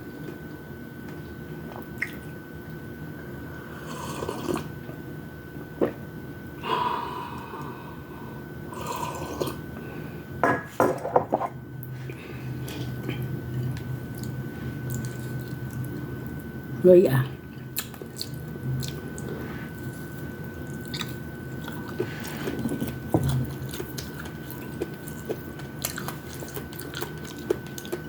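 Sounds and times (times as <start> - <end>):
tableware clicks and clinks: 10.4 - 11.6
wet mouth eating noises: 12.6 - 16.0, 17.6 - 28.0.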